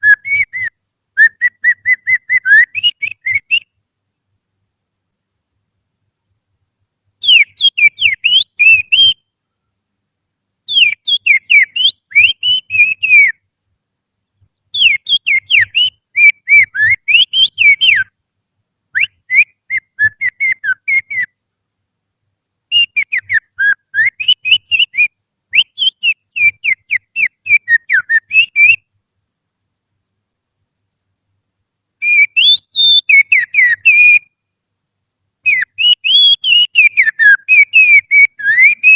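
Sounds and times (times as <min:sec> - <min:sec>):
person whistling falling notes: 0:38.5 - 0:38.9.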